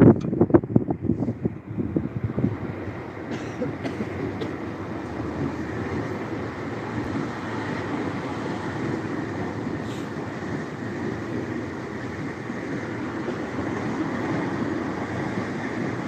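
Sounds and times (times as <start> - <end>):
train running on rails: 0.0 - 16.0.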